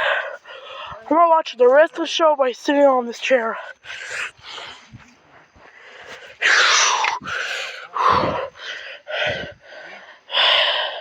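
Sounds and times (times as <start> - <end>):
person gasping and groaning: 6.4 - 8.6.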